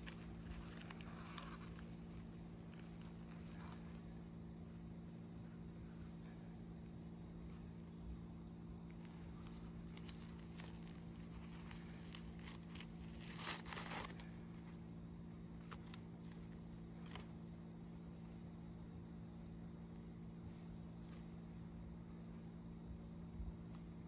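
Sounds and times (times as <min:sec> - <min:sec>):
crinkling tearing rustle: 0:00.0 - 0:05.5, 0:08.8 - 0:14.8, 0:15.4 - 0:17.5
faint clicks and crackles: 0:00.0 - 0:19.3.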